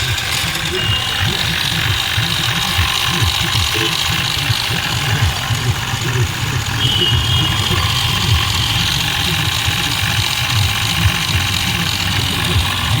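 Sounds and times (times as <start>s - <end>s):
diesel engine idling: 0.0s - 13.0s
high hissing whine: 0.0s - 13.0s.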